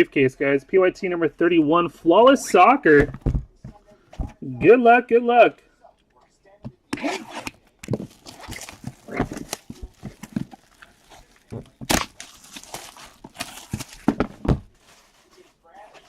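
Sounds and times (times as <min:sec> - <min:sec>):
packaging crinkling and rustling: 0:07.8 - 0:16.0.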